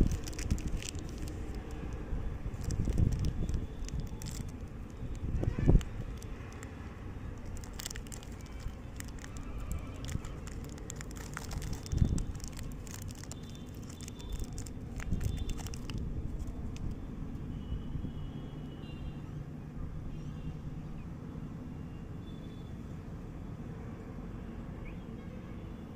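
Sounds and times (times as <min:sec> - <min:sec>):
chocolate wrapper crinkling: 0:00.0 - 0:17.0.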